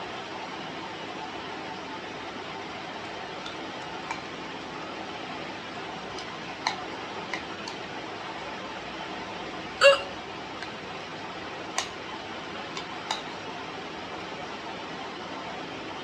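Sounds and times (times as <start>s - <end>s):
woman hiccuping: 9.8s - 10.2s.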